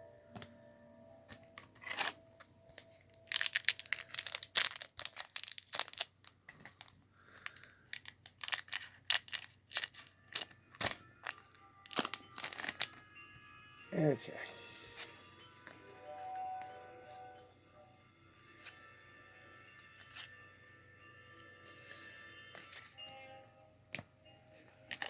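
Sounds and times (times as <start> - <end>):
wrapper being torn and crinkled: 1.8 - 13.0.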